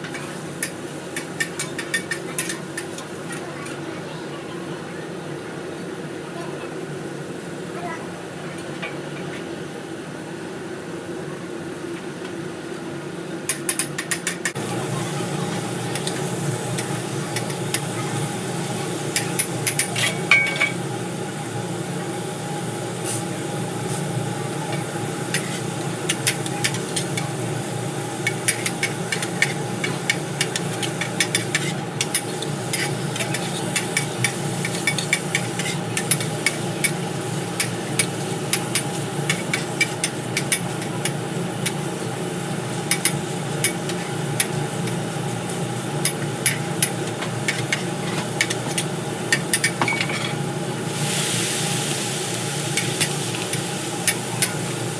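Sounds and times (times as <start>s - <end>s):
utensils clattering against cookware: 0.0s - 3.9s, 13.5s - 20.9s, 23.0s - 41.9s, 42.6s - 50.5s, 52.6s - 54.9s.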